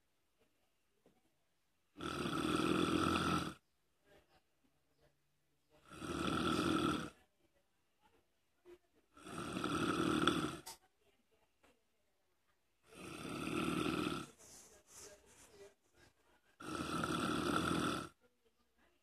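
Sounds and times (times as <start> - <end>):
person snoring: 2.0 - 3.6, 5.8 - 7.2, 9.2 - 10.8, 12.9 - 14.4, 16.6 - 18.2.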